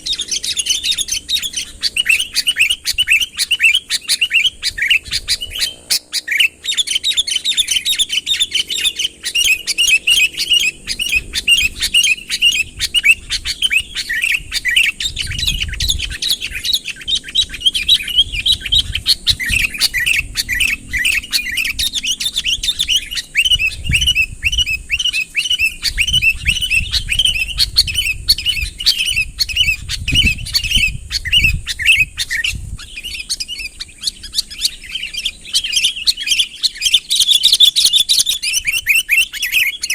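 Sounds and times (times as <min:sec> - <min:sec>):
bird chirping and warbling: 0:00.0 - 0:39.9.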